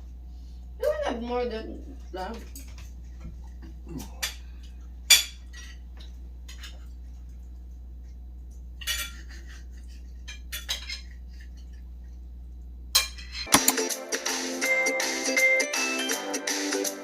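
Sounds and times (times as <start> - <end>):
steady low hum: 0.0 - 13.8
cutlery clinking on plates: 8.8 - 9.4, 10.2 - 11.1.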